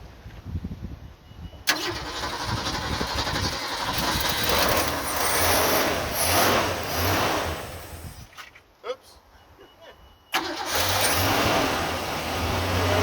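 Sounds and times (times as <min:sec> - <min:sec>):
car engine starting and running: 0:01.7 - 0:08.3, 0:10.3 - 0:13.0.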